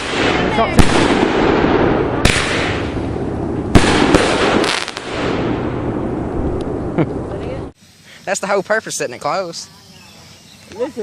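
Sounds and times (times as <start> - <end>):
firework bangs: 0.0 - 7.0
fireworks crackling: 0.0 - 9.9.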